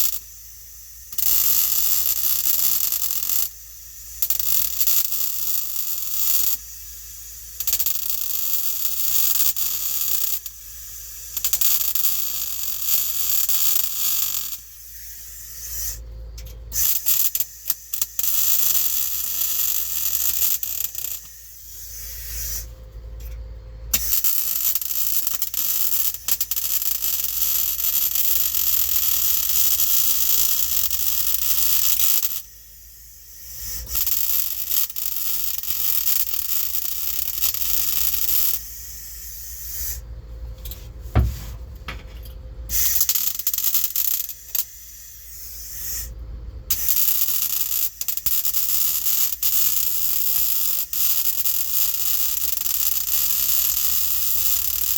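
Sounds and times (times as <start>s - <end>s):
welding arc crackling and hissing: 0.0s - 16.1s, 16.8s - 22.8s, 24.0s - 32.5s, 33.2s - 40.2s, 42.8s - 54.9s.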